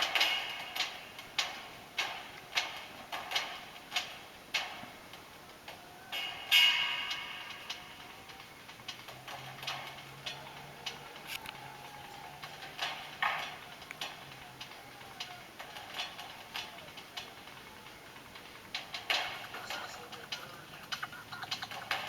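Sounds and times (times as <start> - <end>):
faint clicks and ticks: 0.0 - 22.0.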